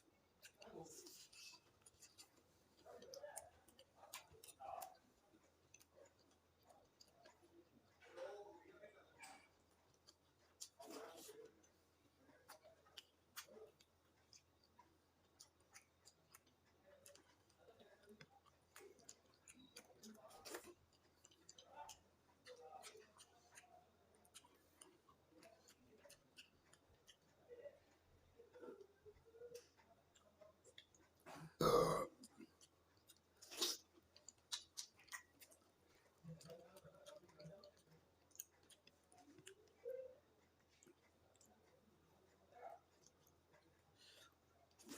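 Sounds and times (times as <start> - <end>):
chewing: 0.0 - 44.9
mouth clicks and smacks: 12.3 - 41.8.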